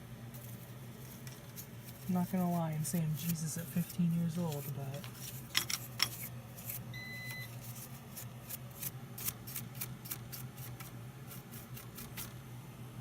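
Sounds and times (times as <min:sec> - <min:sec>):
short electronic beep: 0:06.9 - 0:07.5.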